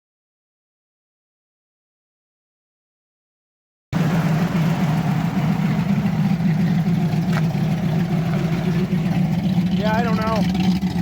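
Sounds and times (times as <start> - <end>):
car engine idling: 4.0 - 11.0.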